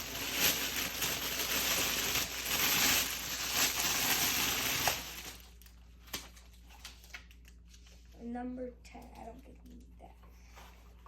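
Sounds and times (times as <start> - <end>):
packaging rustling and crinkling: 0.0 - 7.9.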